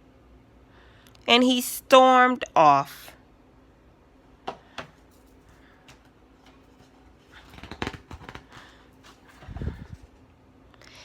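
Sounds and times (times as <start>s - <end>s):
page turning paper rustle: 5.1s - 10.2s.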